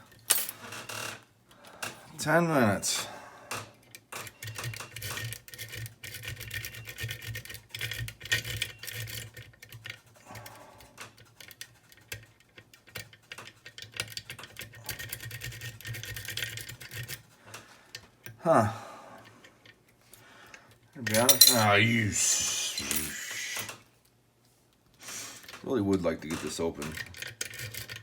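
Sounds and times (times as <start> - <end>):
lock picks clicking and scraping: 3.9 - 10.2, 21.1 - 21.8, 26.8 - 28.0.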